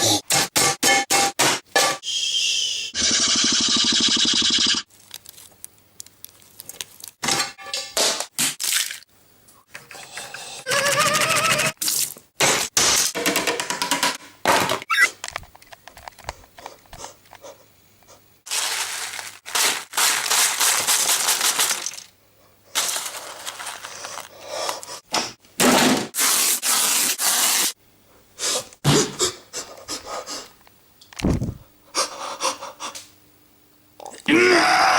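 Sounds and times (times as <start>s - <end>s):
low thud: 31.2s - 31.7s.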